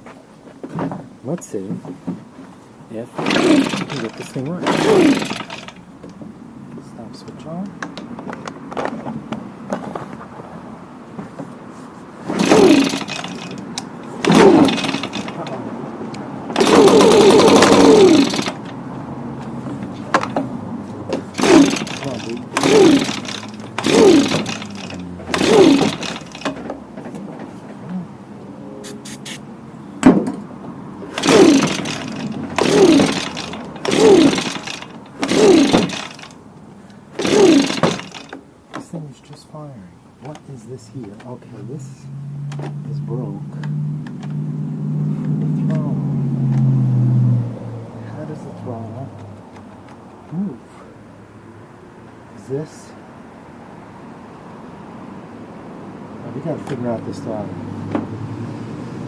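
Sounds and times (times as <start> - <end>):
recoil starter rope pull: 3.0 - 6.2, 11.2 - 28.1, 30.0 - 39.5, 40.2 - 41.7, 42.3 - 47.1, 56.3 - 58.4
small engine cranking: 3.0 - 6.2, 12.0 - 28.1, 28.8 - 39.4, 40.2 - 47.4, 56.3 - 57.4.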